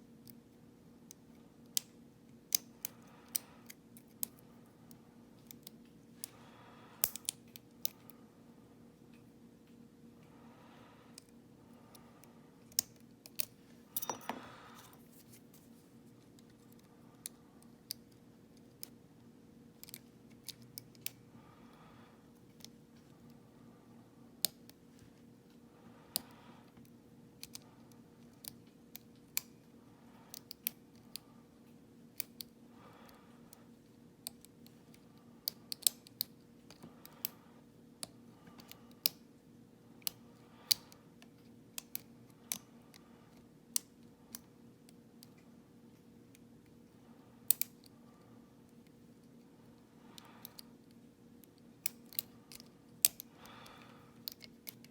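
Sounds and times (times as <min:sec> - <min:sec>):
lock picks clicking metallically: 0:12.8 - 0:14.9.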